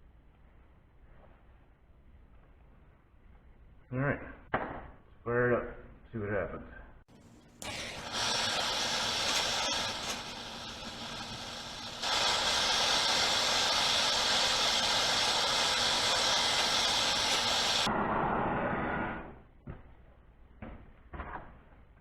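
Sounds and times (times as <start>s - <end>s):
blowtorch flame hissing: 7.6s - 19.4s.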